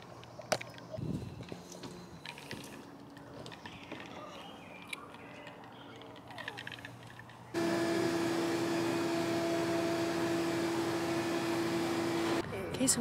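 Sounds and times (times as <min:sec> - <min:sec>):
juicer motor humming: 0:07.6 - 0:12.4.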